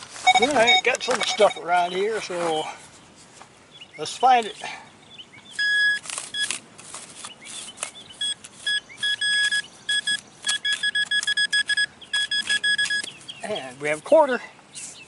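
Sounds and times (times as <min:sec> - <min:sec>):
metal detector beeping: 0:00.2 - 0:02.6, 0:05.6 - 0:06.6, 0:07.8 - 0:13.1.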